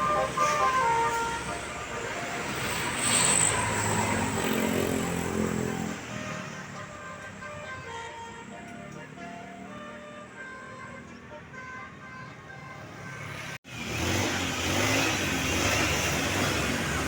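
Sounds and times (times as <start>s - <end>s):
multi-tone bus horn tune: 0.0s - 13.6s
bus passing on road: 0.0s - 17.0s.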